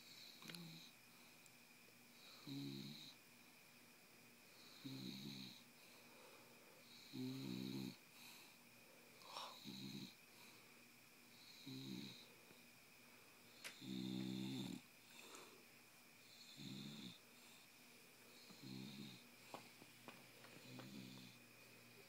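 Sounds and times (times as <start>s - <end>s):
dog snoring: 0.0s - 0.9s, 2.2s - 3.2s, 4.5s - 5.7s, 6.8s - 8.4s, 9.2s - 10.2s, 11.3s - 12.3s, 13.5s - 15.5s, 16.2s - 17.6s, 18.4s - 19.3s, 20.5s - 21.4s.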